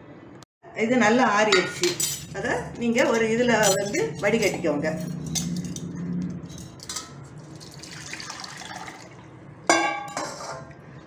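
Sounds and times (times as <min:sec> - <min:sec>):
kitchenware clinking: 0:01.4 - 0:09.0, 0:09.7 - 0:10.8
liquid trickling into a cup: 0:07.4 - 0:09.4.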